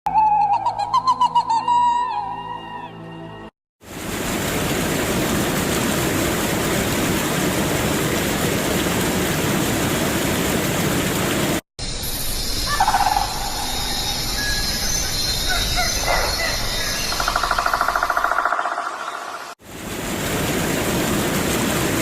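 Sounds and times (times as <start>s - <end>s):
rushing water roar: 3.8s - 11.6s, 19.6s - 22.0s.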